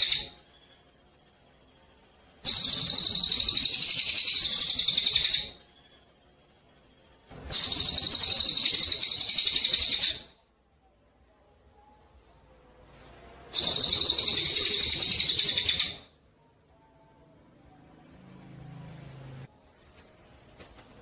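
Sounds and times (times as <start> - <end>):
songbird trilling: 2.4 - 5.6, 7.5 - 10.3, 13.6 - 16.1.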